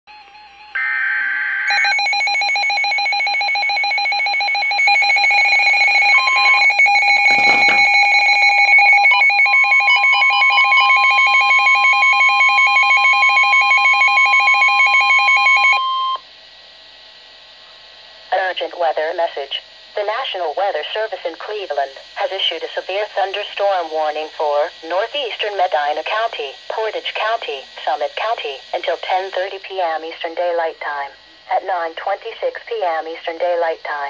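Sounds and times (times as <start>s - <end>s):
rapidly pulsing electronic alarm: 0.1s - 16.2s, 21.7s - 32.2s
steady single-pitched warning tone: 0.1s - 16.2s.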